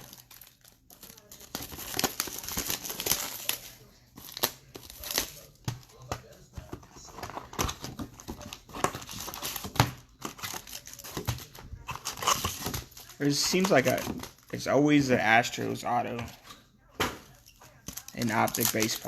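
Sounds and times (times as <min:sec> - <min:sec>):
foil wrapper tearing and crinkling: 0:00.0 - 0:05.7, 0:07.1 - 0:14.6, 0:17.4 - 0:19.0
cards being handled: 0:00.0 - 0:19.0.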